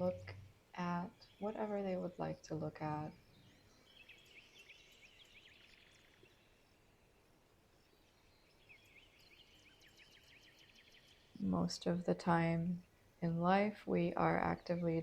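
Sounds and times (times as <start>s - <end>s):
birds chirping: 0.0s - 6.8s.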